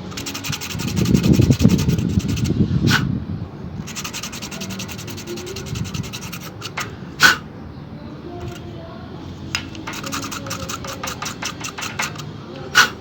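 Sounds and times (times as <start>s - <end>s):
sandpaper rubbing on plastic pipe: 0.0s - 3.1s, 3.8s - 7.4s, 9.7s - 13.0s.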